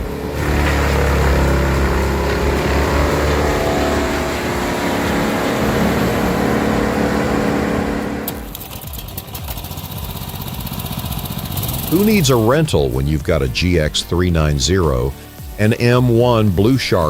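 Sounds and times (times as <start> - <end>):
wood chipper engine chipping wood: 0.0 - 12.7.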